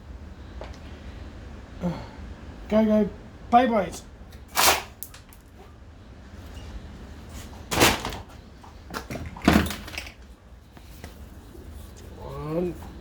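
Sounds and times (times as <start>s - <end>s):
plastic and metal parts clattering: 7.7s - 8.3s, 8.9s - 10.2s.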